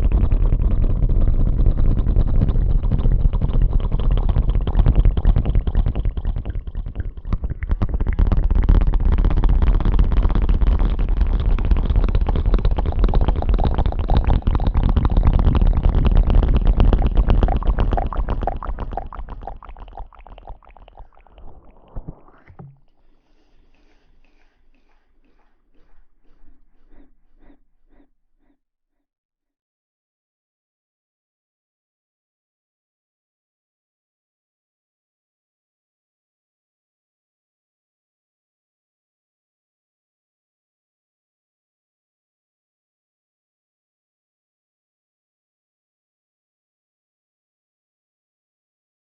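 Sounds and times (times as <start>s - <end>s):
rustling against microphone: 20.0s - 28.6s.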